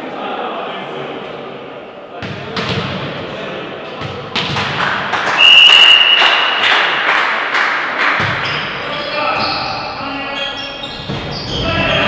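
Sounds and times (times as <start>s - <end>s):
referee's whistle: 5.4s - 7.0s.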